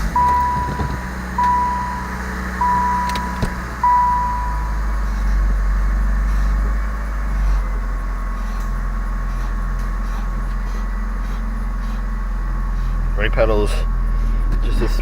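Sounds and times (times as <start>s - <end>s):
dashboard warning chime beeps: 0.0s - 4.8s
car engine idling: 0.0s - 15.0s.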